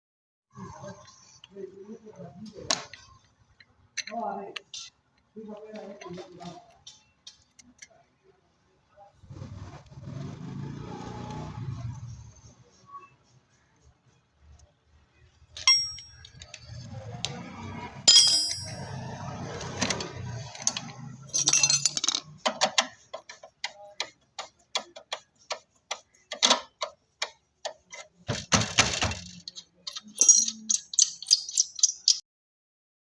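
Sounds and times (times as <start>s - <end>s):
handling clatter: 15.6s - 16.6s, 18.1s - 23.6s, 24.8s - 32.2s.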